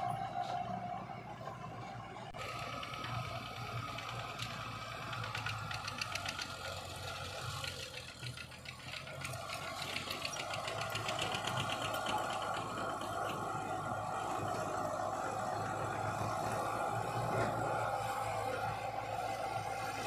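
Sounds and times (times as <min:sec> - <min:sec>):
diesel machinery engine hum: 0:00.0 - 0:20.0
fast rattling clicks: 0:03.8 - 0:13.4.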